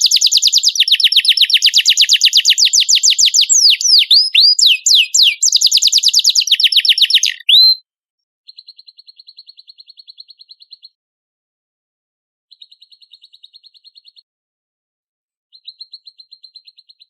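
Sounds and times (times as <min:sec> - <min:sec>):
canary singing trills: 0:00.0 - 0:07.8.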